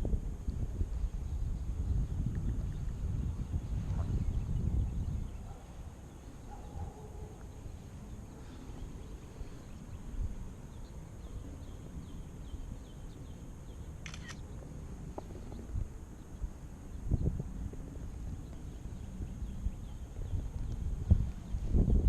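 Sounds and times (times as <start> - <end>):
wind rumble on microphone: 0.0 - 22.0.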